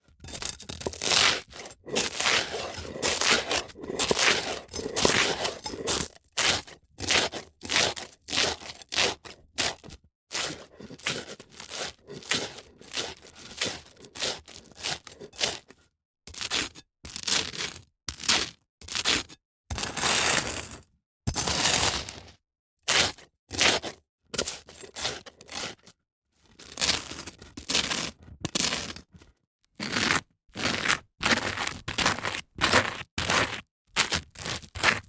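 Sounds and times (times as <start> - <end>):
toast crunching and scraping: 0.1 - 15.8, 23.0 - 25.9, 29.8 - 35.0.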